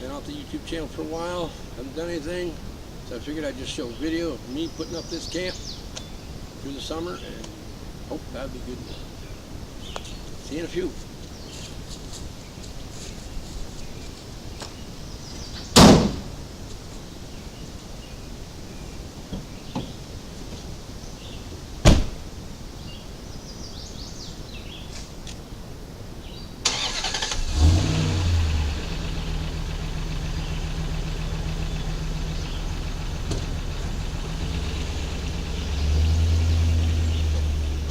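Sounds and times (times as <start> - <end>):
loud sharp thumps: 15.7 - 16.4, 21.8 - 22.2
vehicle engine starting and idling: 26.6 - 37.9.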